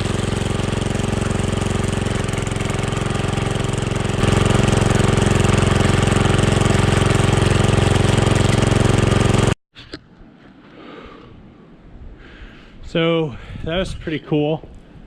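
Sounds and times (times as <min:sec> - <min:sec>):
garden tractor engine running: 0:00.0 - 0:09.6.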